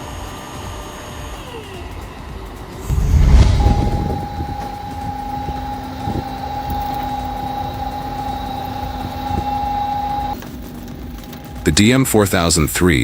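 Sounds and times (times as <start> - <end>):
loud low thump: 2.9 - 4.9
wood-processing machine whining: 4.7 - 12.0.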